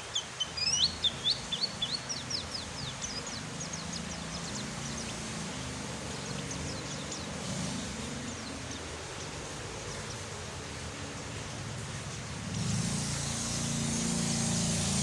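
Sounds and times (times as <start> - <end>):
faint high bird chirps: 0.0 - 5.4
steady rain hiss: 0.0 - 15.0.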